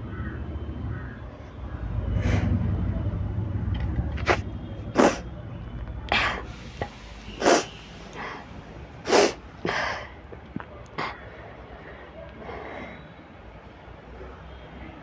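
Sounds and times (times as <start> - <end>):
woman sniffing and breathing: 5.0 - 5.2, 6.3 - 10.2.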